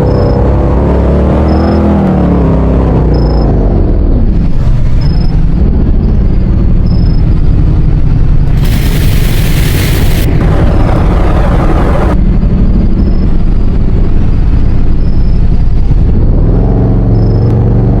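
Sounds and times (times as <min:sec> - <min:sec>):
loud low rumble: 0:03.6 - 0:17.0
burst of hiss: 0:08.5 - 0:10.4
fire siren winding down: 0:08.6 - 0:12.2.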